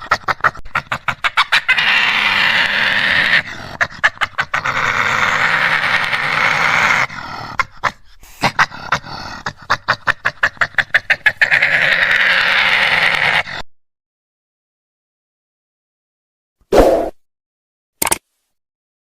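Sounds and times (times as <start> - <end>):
badger growling: 0.0 - 13.7.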